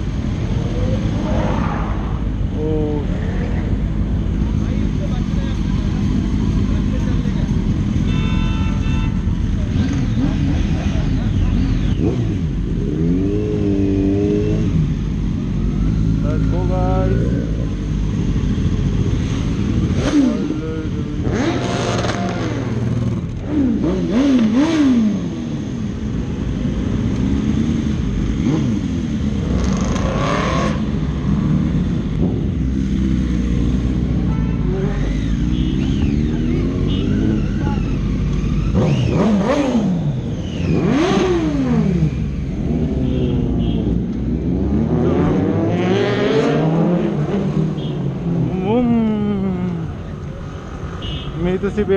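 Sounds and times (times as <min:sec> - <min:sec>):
motorcycles revving and accelerating: 0:00.0 - 0:51.9.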